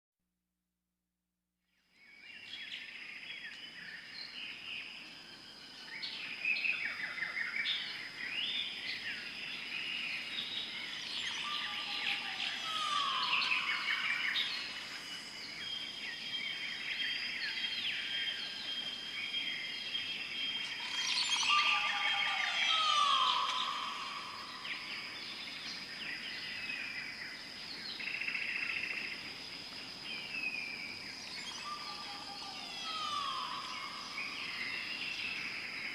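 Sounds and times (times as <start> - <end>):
many birds calling: 10.7 - 15.8, 19.5 - 26.2, 31.3 - 35.9.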